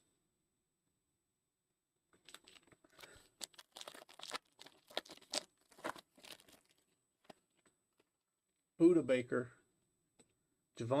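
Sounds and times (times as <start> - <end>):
foil wrapper tearing and crinkling: 2.3 - 6.9.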